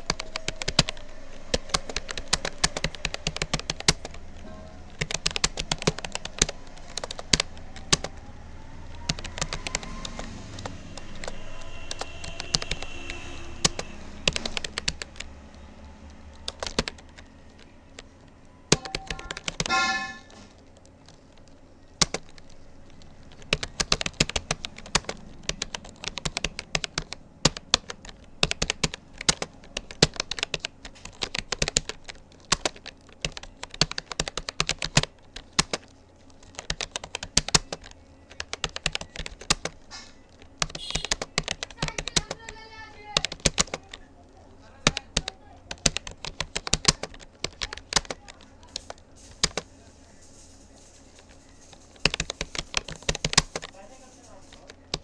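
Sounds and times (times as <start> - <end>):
brief pitched ringing tone: 0.0 - 7.6, 18.5 - 20.5
keyboard typing: 0.0 - 55.0.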